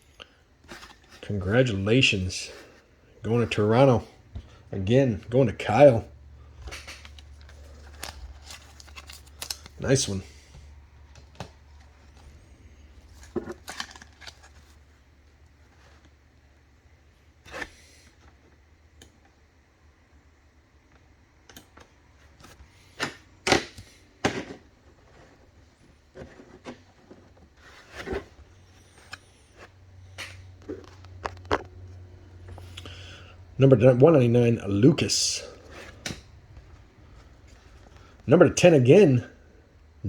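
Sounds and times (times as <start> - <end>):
low steady hum: 0.0 - 40.0
cards and packaging rustling: 0.3 - 4.6, 5.7 - 16.2, 22.3 - 33.2.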